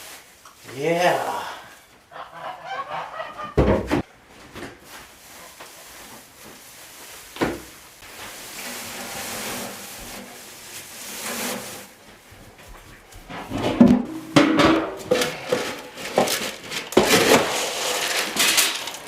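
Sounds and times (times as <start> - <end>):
hay rustling: 0.0 - 1.4, 4.3 - 13.3.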